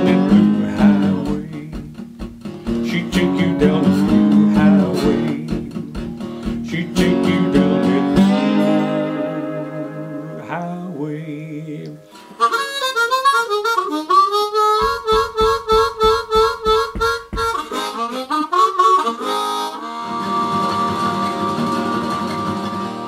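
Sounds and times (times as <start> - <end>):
blues harmonica: 0.0 - 10.4, 11.6 - 23.0
low thumps on the beat: 0.2 - 7.2, 14.7 - 18.0.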